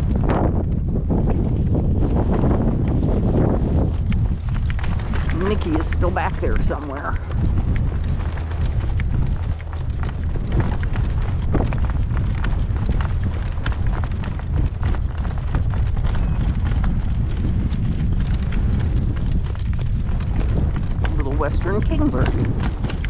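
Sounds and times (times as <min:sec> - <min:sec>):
wind buffeting microphone: 0:00.0 - 0:23.0.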